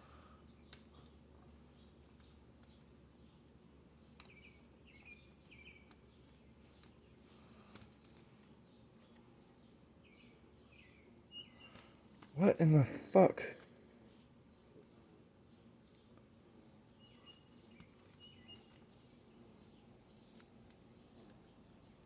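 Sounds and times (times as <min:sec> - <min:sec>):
faint bird chirps: 0:03.3 - 0:07.5, 0:08.6 - 0:12.4, 0:14.6 - 0:22.0.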